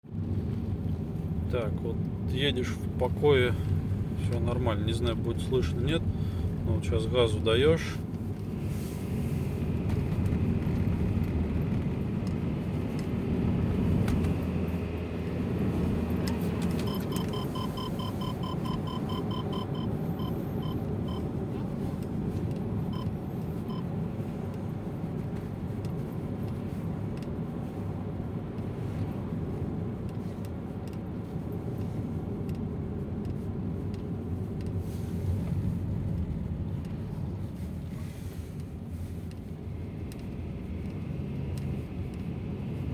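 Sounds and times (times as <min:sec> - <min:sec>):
road noise inside car: 0:00.0 - 0:42.9
car engine under throttle: 0:00.1 - 0:42.9
short beeps: 0:16.8 - 0:21.3, 0:22.9 - 0:23.9.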